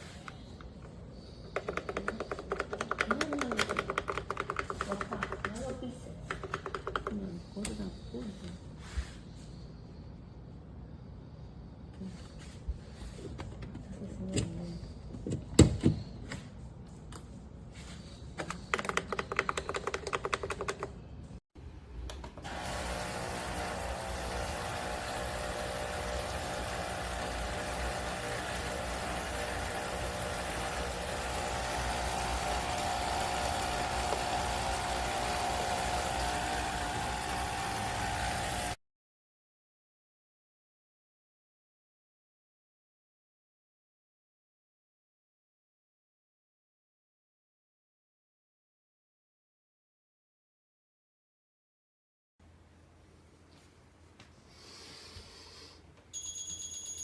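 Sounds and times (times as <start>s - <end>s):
pump buzzing hum: 22.3s - 38.8s.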